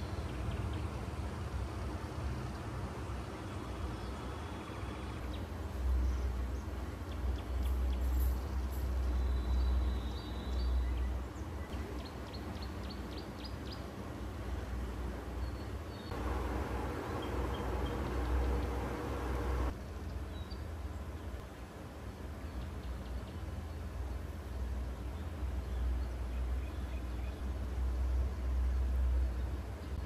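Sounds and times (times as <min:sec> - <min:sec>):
small birds chirping: 0:03.3 - 0:14.0, 0:15.3 - 0:21.4
steady low rumble: 0:16.1 - 0:19.8.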